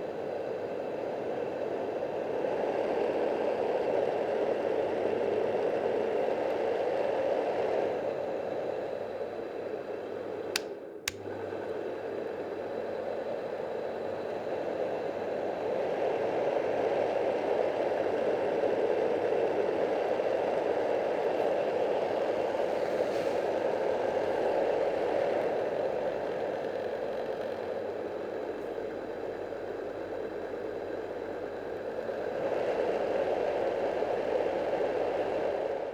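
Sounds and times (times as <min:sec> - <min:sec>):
white noise machine fan rushing: 0:02.4 - 0:35.9
sharp clicks: 0:10.6 - 0:11.2.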